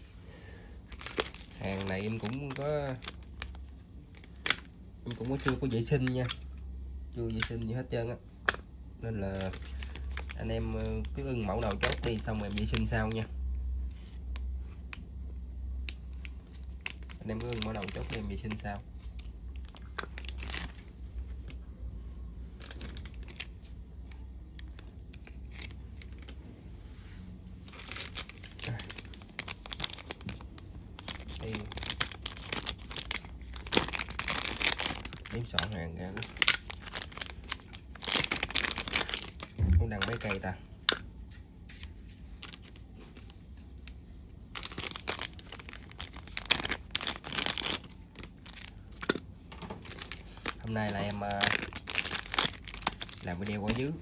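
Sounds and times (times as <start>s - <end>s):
plastic packaging crinkling: 0.8s - 6.2s, 9.2s - 13.3s, 16.1s - 21.6s, 22.6s - 23.7s, 27.6s - 40.6s, 42.0s - 43.2s, 44.4s - 54.0s.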